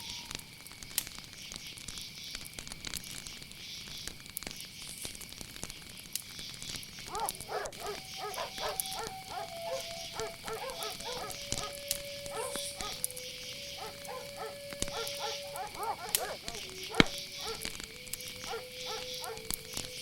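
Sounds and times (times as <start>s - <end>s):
crickets chirring: 0.0s - 20.0s
small crackling clicks: 0.0s - 20.0s
dogs barking: 7.1s - 17.7s, 18.4s - 19.6s
long held tone: 7.4s - 20.0s.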